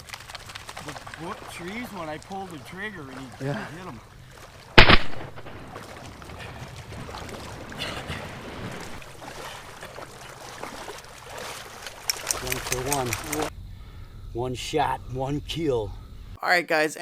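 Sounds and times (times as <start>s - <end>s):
shotgun blast: 4.8s - 5.7s
outdoor background hiss: 11.9s - 17.0s.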